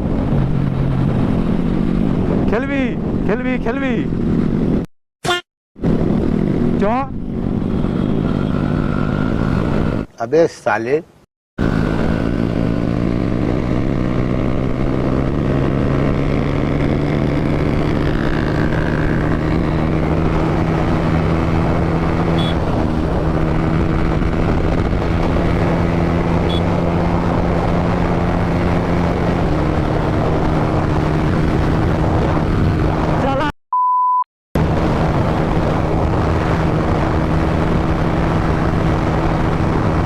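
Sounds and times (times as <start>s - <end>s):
wind rush: 0.0s - 4.9s, 11.6s - 33.5s, 34.6s - 40.0s
motorcycle engine running: 11.6s - 33.1s.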